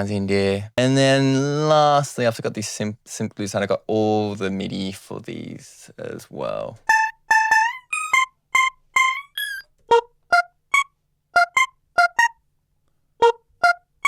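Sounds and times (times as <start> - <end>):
staccato synth melody: 6.9 - 10.0.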